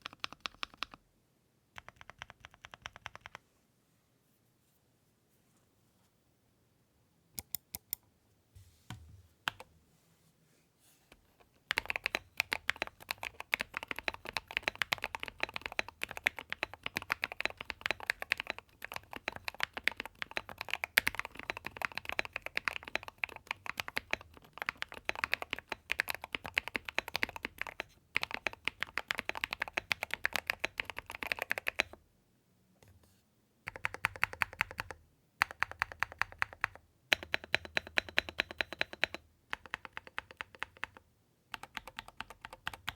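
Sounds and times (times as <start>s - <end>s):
typing on mechanical keyboard: 0.0s - 1.0s, 1.8s - 3.4s, 11.7s - 32.0s, 33.7s - 42.9s.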